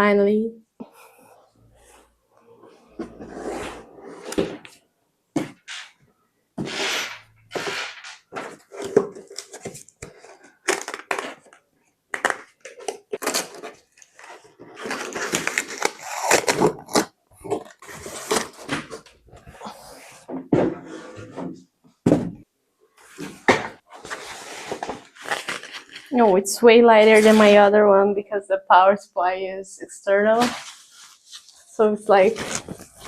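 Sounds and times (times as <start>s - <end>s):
packaging rustling and crinkling: 12.2s - 19.5s, 23.1s - 26.2s, 30.4s - 33.0s.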